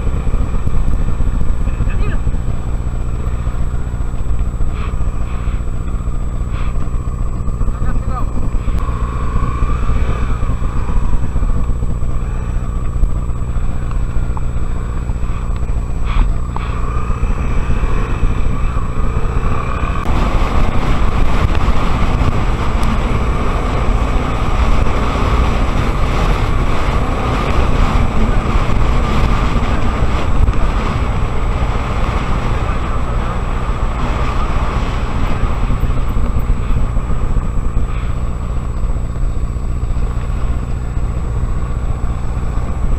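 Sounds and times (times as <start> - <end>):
motorcycle engine rumbling: 0.0 - 42.9.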